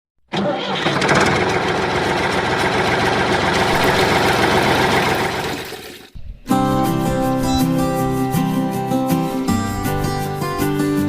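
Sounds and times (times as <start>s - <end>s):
engine running: 0.3s - 6.1s.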